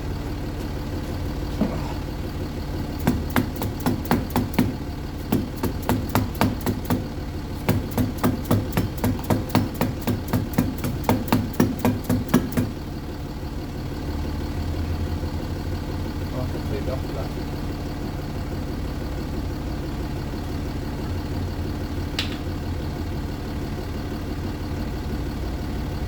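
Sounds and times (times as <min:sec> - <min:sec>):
car engine idling: 0:00.0 - 0:26.0
hammer tapping metal hub: 0:03.0 - 0:12.8.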